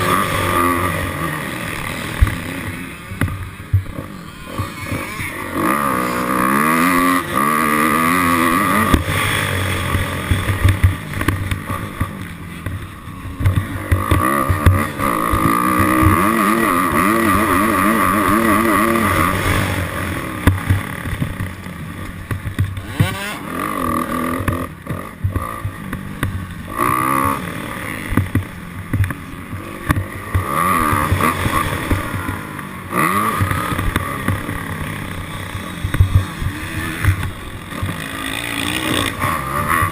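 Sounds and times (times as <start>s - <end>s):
dirt bike engine revving: 0.0s - 39.9s.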